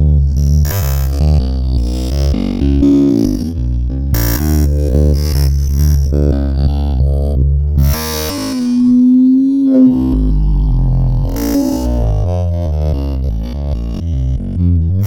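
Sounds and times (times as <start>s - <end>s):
held synth note: 8.6s - 12.4s.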